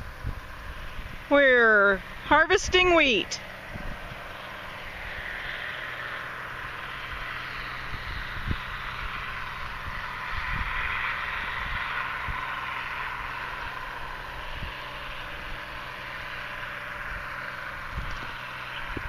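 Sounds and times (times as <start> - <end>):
combine harvester humming: 0.0 - 19.0
wind bumps on microphone: 7.9 - 8.8, 9.8 - 10.9, 17.9 - 19.0.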